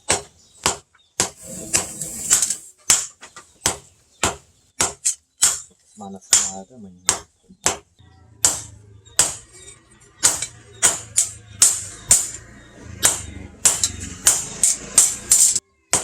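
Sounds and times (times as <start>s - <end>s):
hammer striking steel: 8.4s - 16.0s.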